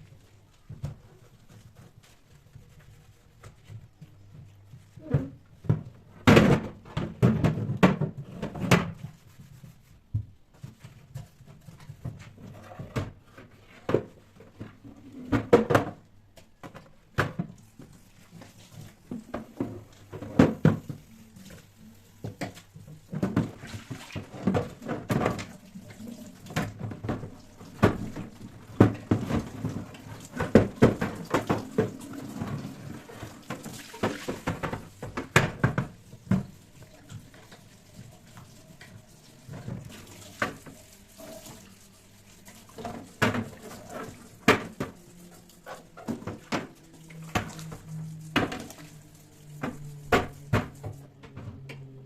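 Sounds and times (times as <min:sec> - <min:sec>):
kitchen items knocking and clattering: 0:05.1 - 0:09.0, 0:22.2 - 0:36.6.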